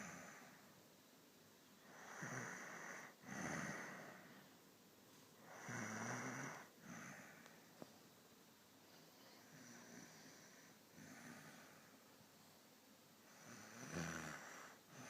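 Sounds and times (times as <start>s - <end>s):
heavy rattling snoring: 13.4s - 15.0s.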